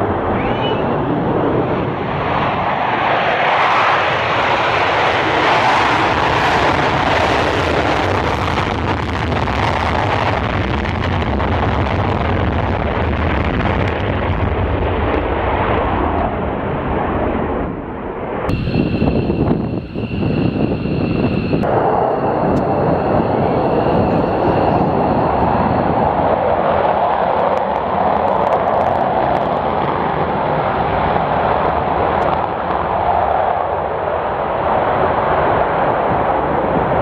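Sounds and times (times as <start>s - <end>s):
loud jet engine noise: 0.0s - 37.0s
high jet whine: 18.4s - 37.0s.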